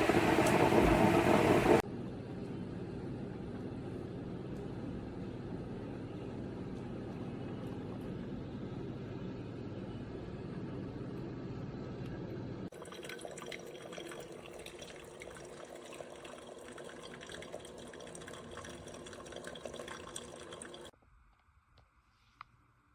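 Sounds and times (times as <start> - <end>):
hot water spattering and dripping: 0.0 - 1.8, 12.7 - 20.9
coffee maker low rumble: 0.0 - 20.9.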